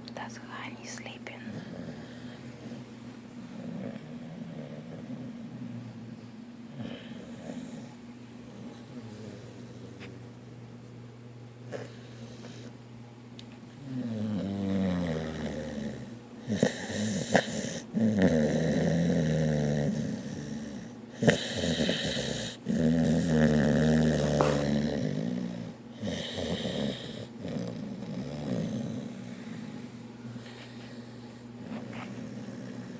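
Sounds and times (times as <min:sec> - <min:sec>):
long drawn-out snores: 0:13.8 - 0:29.9.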